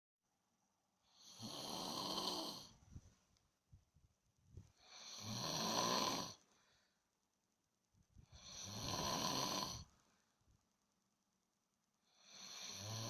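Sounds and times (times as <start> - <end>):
panda snoring: 1.2 - 2.7, 4.9 - 6.4, 8.4 - 9.8.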